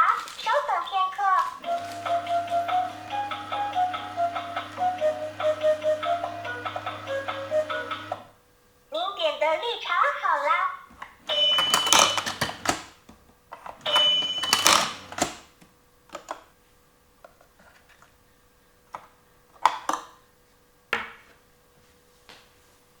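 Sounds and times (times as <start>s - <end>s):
plastic toy clicking and rattling: 11.3s - 13.0s, 13.6s - 15.5s.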